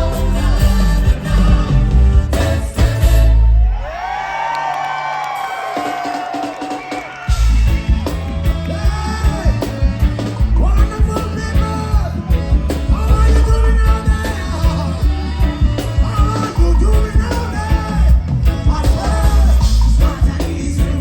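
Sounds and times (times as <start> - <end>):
person singing: 0.0 - 3.3, 8.1 - 21.0
live reggae band: 0.0 - 21.0.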